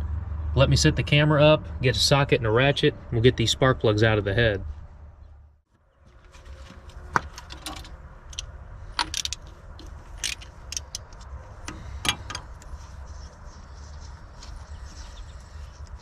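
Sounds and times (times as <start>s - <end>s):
sharp metallic clicks: 7.3s - 12.8s.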